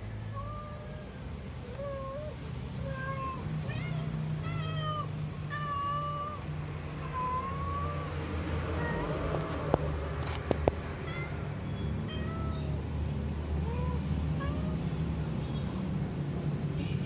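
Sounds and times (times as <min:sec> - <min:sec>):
cat meowing high-pitched: 0:01.7 - 0:09.8, 0:11.0 - 0:12.8, 0:13.6 - 0:14.9.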